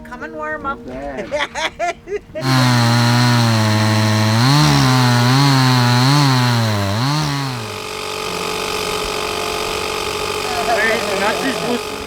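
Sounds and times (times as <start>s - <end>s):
chainsaw engine revving: 2.4s - 12.0s.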